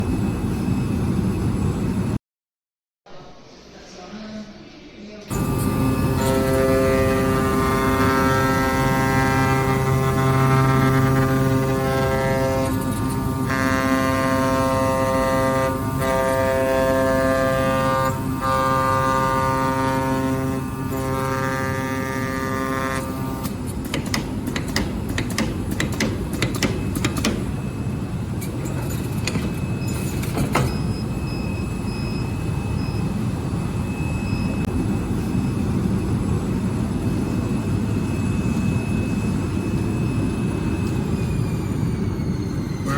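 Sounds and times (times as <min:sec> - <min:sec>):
cutting machine buzzing: 0:05.3 - 0:27.9
sharp machine clicks: 0:23.4 - 0:27.5
faint high whine: 0:27.4 - 0:42.9.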